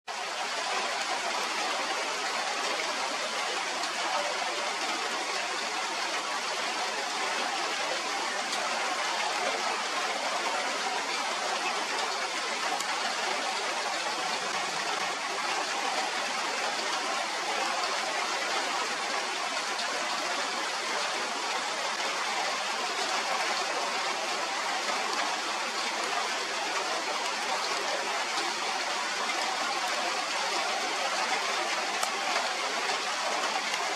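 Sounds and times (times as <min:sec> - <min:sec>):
steady rainfall: 0:00.0 - 0:33.9.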